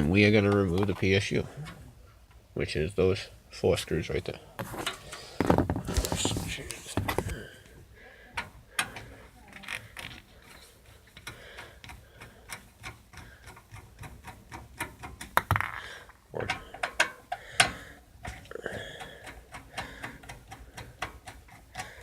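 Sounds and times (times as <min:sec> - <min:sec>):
screwdriver clicks and ticks: 0:11.1 - 0:15.3, 0:16.8 - 0:22.0.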